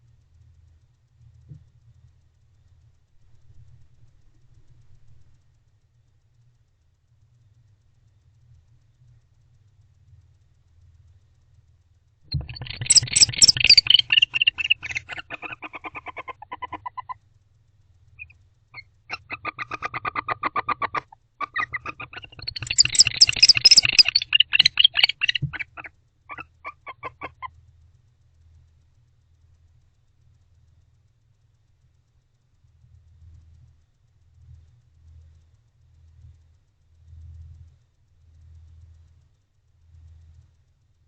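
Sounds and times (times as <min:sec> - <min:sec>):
owls twittering calls: 0:12.3 - 0:17.2, 0:18.2 - 0:27.5.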